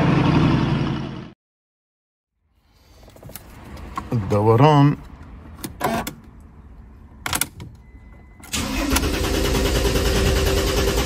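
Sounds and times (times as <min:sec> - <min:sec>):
starter motor cranking engine: 0:08.5 - 0:11.0.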